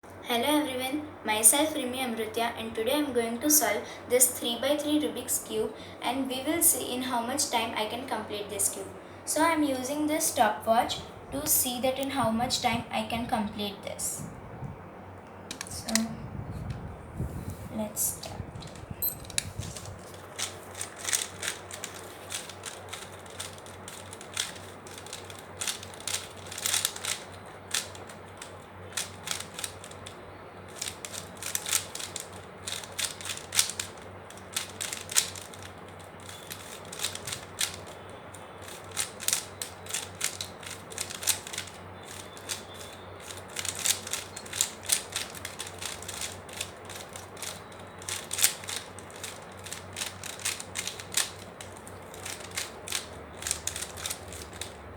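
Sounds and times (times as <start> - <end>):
puzzle cube clicking: 18.6 - 54.8.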